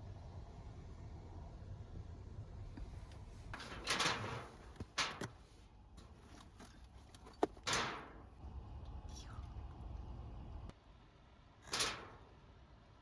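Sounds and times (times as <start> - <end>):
objects scraping and sliding: 2.8 - 7.8.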